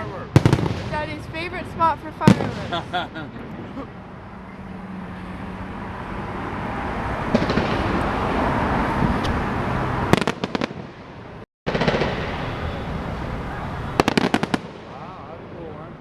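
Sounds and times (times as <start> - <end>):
crackling firework bangs: 0.0 - 1.6, 2.2 - 2.9, 7.3 - 8.5, 10.1 - 13.0, 13.9 - 15.1
rumble of firework bursts: 0.0 - 2.9, 7.3 - 8.2, 10.1 - 15.6.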